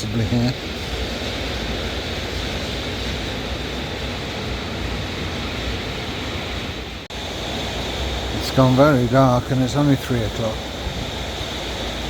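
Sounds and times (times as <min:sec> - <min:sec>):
heavy rain falling: 0:07.1 - 0:12.0.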